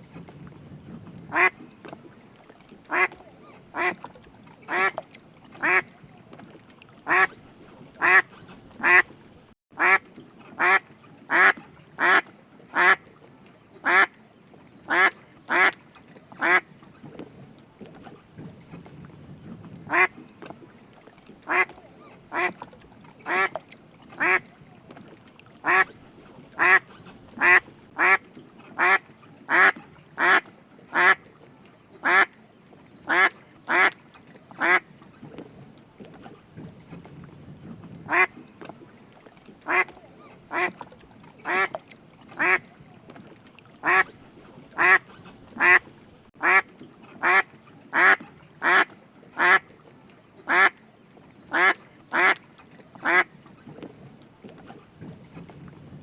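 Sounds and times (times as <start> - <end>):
duck quacking: 1.3 - 1.6, 2.9 - 4.0, 4.7 - 5.0, 7.1 - 7.3, 8.0 - 9.1, 9.8 - 10.0, 10.6 - 12.2, 12.8 - 13.0, 13.8 - 14.1, 14.9 - 15.7, 16.4 - 16.6, 19.9 - 20.1, 21.5 - 21.7, 22.3 - 22.5, 24.2 - 24.4, 25.6 - 25.9, 26.6 - 28.2, 28.8 - 31.2, 33.1 - 33.9, 38.1 - 38.3, 39.7 - 39.9, 40.5 - 40.7, 42.4 - 42.6, 43.8 - 44.1, 44.8 - 45.0, 45.6 - 45.8, 46.4 - 46.6, 47.2 - 49.6, 50.5 - 50.7, 51.5 - 52.4, 53.0 - 53.3.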